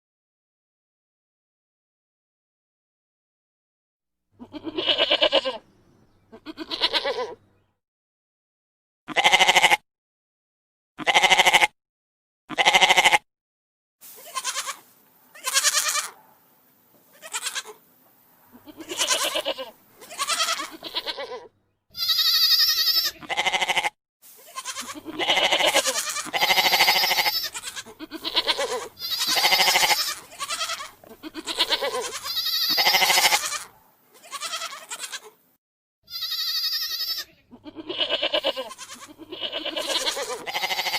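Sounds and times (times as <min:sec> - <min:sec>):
goats bleating: 0:04.4 - 0:07.6, 0:09.1 - 0:09.8, 0:11.0 - 0:11.7, 0:12.5 - 0:13.2, 0:14.2 - 0:16.2, 0:17.1 - 0:17.8, 0:18.4 - 0:35.4, 0:36.1 - 0:40.9.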